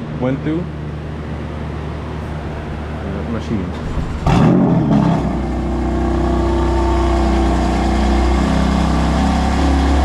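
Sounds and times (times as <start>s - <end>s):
steady tones: 0.4s - 6.2s
motor humming: 0.6s - 4.5s.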